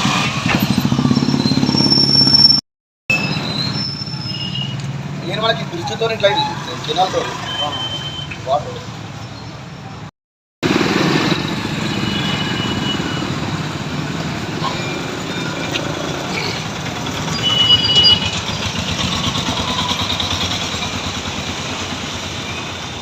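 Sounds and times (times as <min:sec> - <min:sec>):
vehicle engines running: 0:10.6 - 0:23.0.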